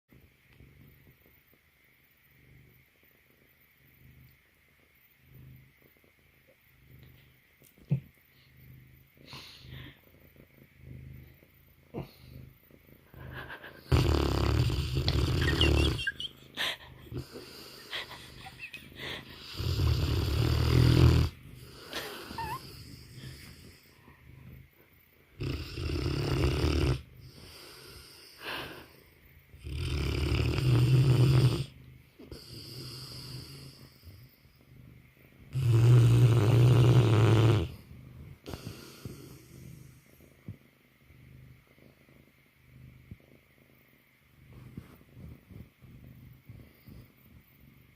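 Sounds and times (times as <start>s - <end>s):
dog snoring: 9.2s - 24.0s, 25.3s - 28.9s, 29.6s - 34.2s, 35.5s - 40.2s.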